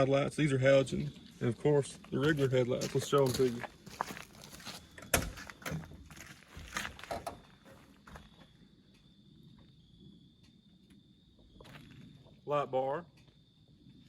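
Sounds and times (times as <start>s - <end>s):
knocks and shuffling: 0.9s - 9.0s.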